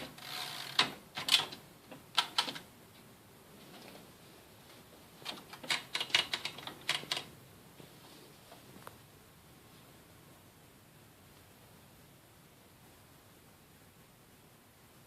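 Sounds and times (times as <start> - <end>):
typewriter keys striking: 0.7 - 1.6, 2.2 - 2.6, 5.2 - 7.3.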